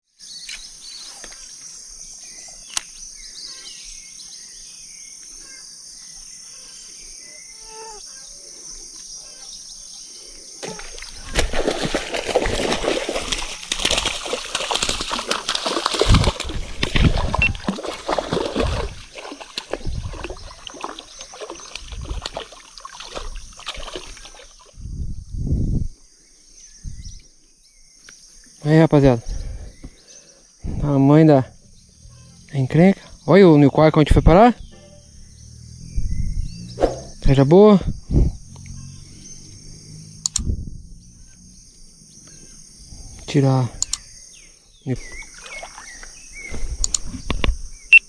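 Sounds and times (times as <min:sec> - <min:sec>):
sharp click: 0:02.7 - 0:02.9, 0:40.2 - 0:40.5, 0:43.8 - 0:44.1, 0:46.8 - 0:47.6
fish thrashing in water: 0:10.6 - 0:24.8, 0:45.1 - 0:46.1.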